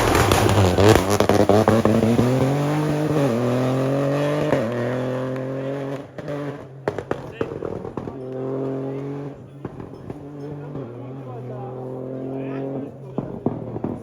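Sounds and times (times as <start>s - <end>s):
sharp cracks: 0.0s - 2.8s
rally car accelerating past: 0.0s - 14.0s.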